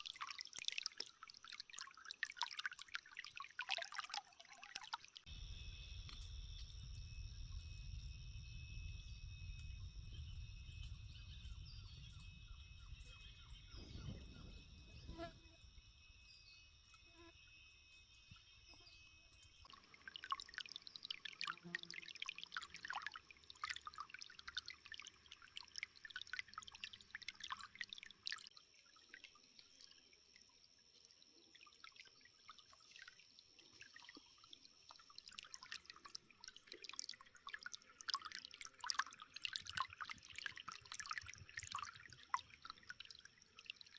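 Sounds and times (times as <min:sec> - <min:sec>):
water trickling and dripping: 0:00.0 - 0:16.1, 0:16.9 - 0:43.9
faint low rumble: 0:05.3 - 0:16.4
steady high-pitched tones: 0:05.3 - 0:19.6.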